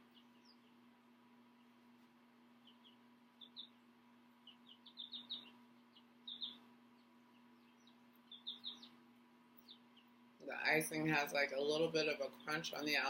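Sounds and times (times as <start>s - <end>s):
faint high bird chirps: 0.0s - 0.9s, 2.6s - 9.0s
faint steady hum: 0.0s - 13.0s.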